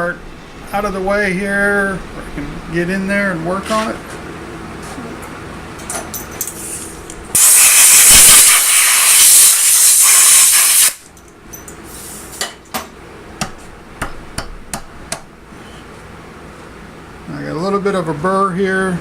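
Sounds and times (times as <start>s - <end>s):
compressed air blast hissing: 6.6s - 11.0s.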